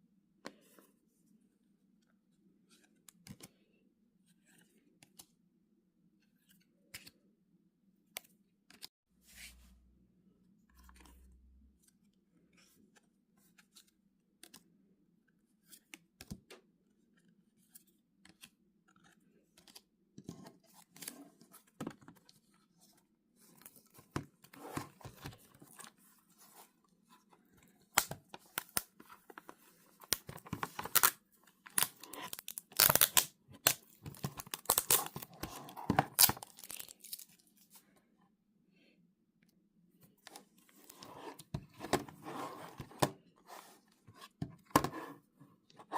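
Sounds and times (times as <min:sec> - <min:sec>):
packaging tearing and crinkling: 0:31.7 - 0:35.3, 0:36.1 - 0:37.2.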